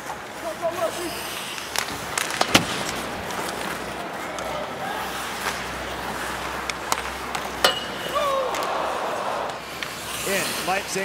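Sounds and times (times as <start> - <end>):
hockey sticks and puck clacks: 0.0 - 11.0
arena crowd noise: 2.6 - 11.0.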